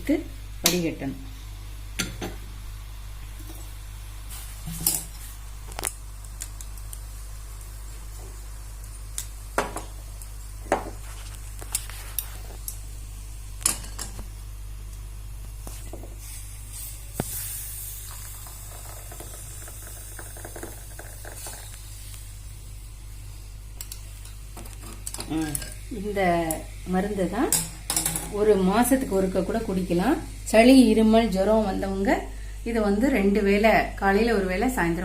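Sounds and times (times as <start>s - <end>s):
liquid hissing while strained: 2.6s - 13.6s, 14.2s - 27.2s
metal utensils clinking on a pan: 27.5s - 28.4s.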